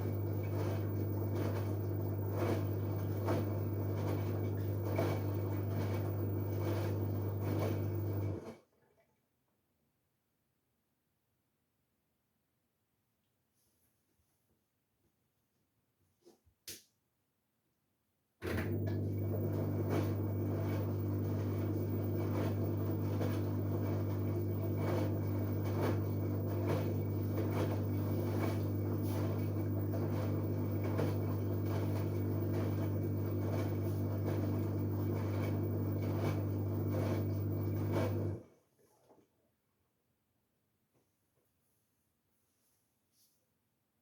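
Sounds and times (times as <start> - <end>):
washing machine humming: 0.0 - 9.0, 18.4 - 38.6.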